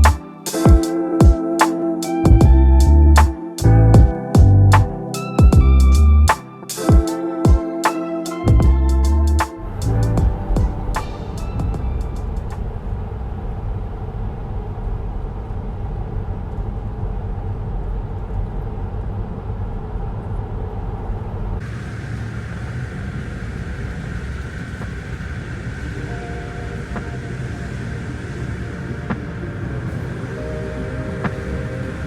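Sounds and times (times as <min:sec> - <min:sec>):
higher road hiss: 0:06.6 - 0:12.8, 0:21.6 - 0:32.0.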